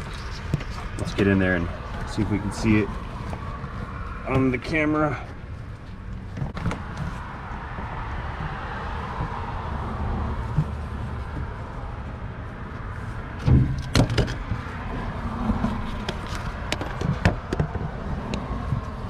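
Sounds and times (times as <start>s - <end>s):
handling noise on pulley: 13.4s - 19.0s.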